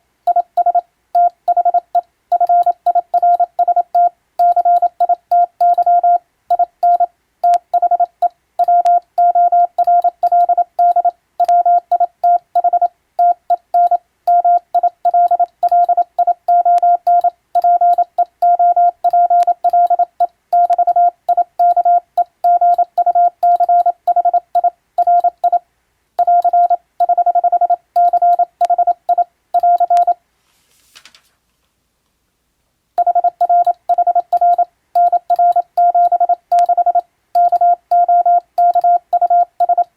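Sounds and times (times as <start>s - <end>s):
morse code tone: 0.3s - 25.6s, 26.2s - 30.2s, 33.0s - 39.9s
faint rustle: 30.3s - 32.2s.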